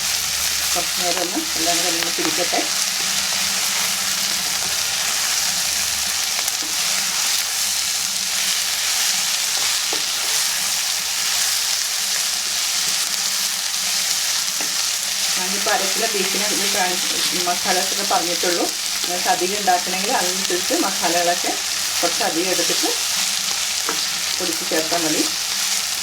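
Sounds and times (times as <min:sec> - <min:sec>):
food sizzling in oil: 0:00.0 - 0:26.0
spoon tapping pan: 0:06.4 - 0:06.9, 0:09.6 - 0:10.4, 0:14.5 - 0:14.9, 0:15.6 - 0:25.4.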